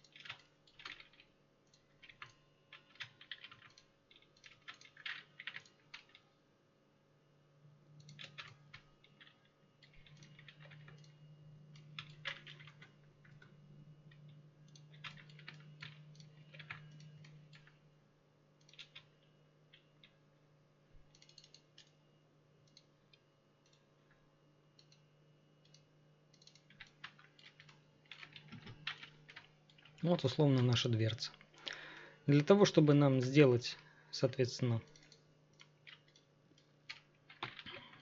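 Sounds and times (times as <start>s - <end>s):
keyboard keys clicking: 0.0s - 6.2s, 8.0s - 17.8s, 18.6s - 19.1s, 21.1s - 21.9s, 25.6s - 30.9s, 34.9s - 38.0s
low steady hum: 0.0s - 38.0s.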